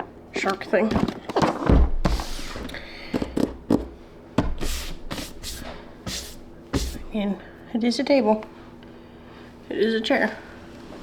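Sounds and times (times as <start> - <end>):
short hissing rustles: 2.1 - 2.8, 4.6 - 7.3
objects knocking on a desk: 3.2 - 4.7.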